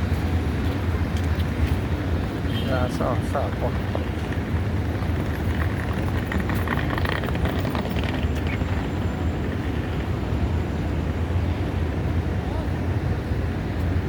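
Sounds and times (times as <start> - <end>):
street traffic rumble: 0.0 - 14.0
faint clatter: 3.2 - 10.3.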